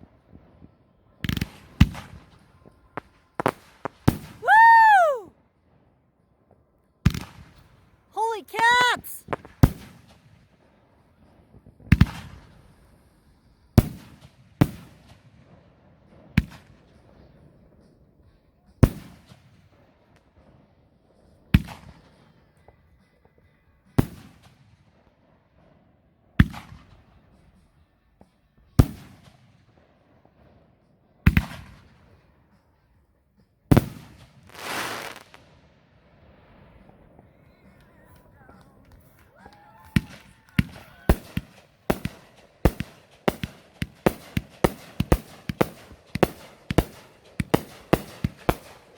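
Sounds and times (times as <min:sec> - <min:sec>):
fireworks bangs echoing: 0:33.8 - 0:35.4, 0:40.6 - 0:48.9
fireworks hissing crackle: 0:34.4 - 0:35.5.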